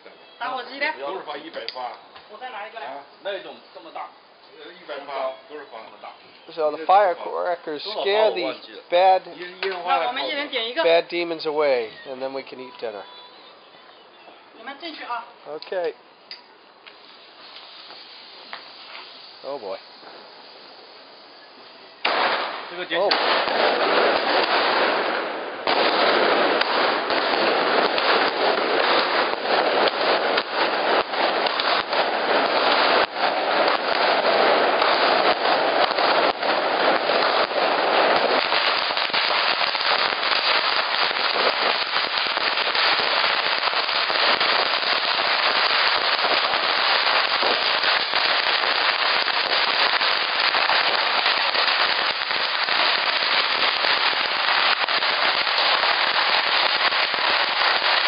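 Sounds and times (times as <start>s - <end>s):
firecrackers crackling: 0.0s - 58.0s.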